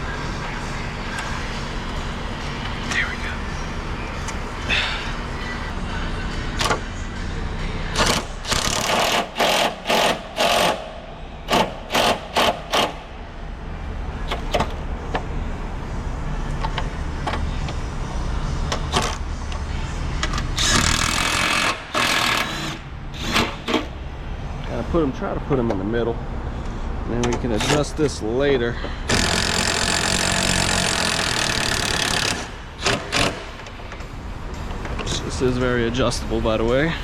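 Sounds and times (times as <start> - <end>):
steady low hum: 0.0 - 37.0
power driver bursts: 29.1 - 33.5.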